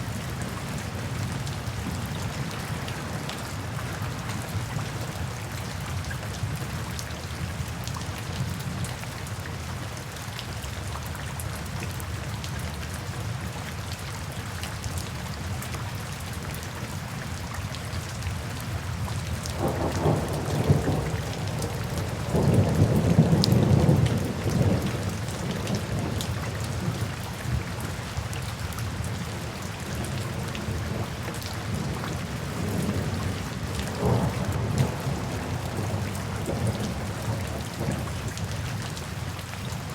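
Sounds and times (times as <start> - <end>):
steady rain falling: 0.0 - 39.9
thunder rumbling: 19.6 - 26.2, 31.7 - 38.4.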